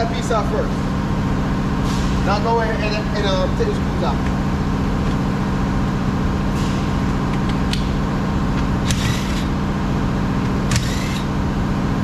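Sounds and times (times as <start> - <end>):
low mechanical hum: 0.0 - 12.0
tool and screws clicking and scraping: 8.8 - 9.5.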